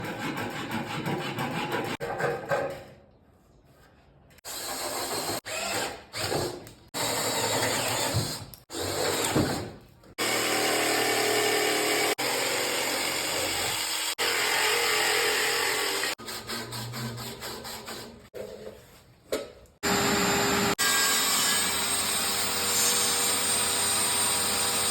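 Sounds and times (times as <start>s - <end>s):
woodworking power tools running: 10.2s - 16.2s, 19.8s - 24.9s.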